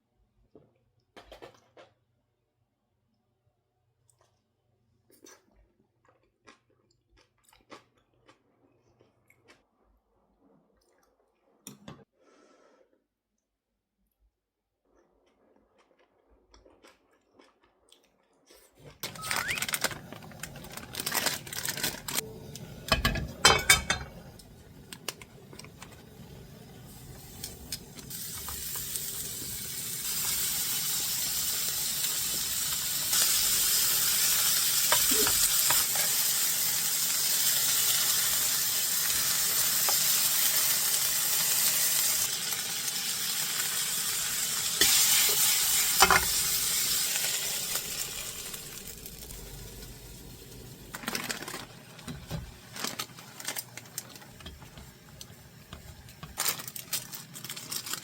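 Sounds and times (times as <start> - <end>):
utensils and cookware clattering: 19.0 - 24.4, 44.8 - 46.7
food sizzling in a pan: 19.1 - 58.0.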